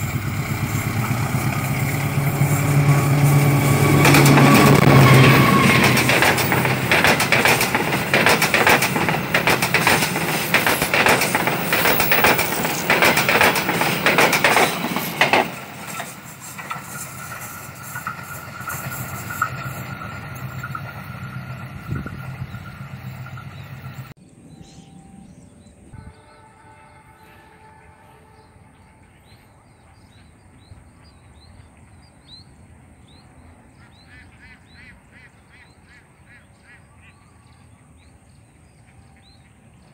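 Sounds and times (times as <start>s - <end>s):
train wheels clattering: 0.0s - 24.1s.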